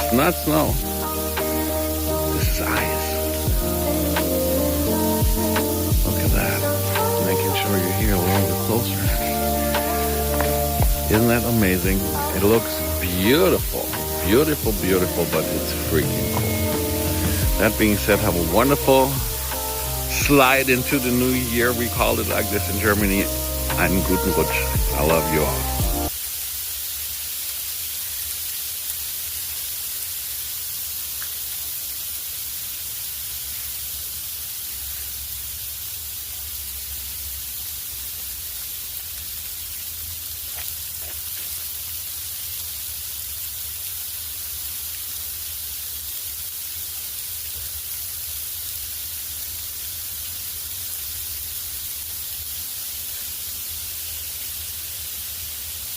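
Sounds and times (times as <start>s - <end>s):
low hum: 0.0s - 26.1s
steady hiss: 0.0s - 55.9s.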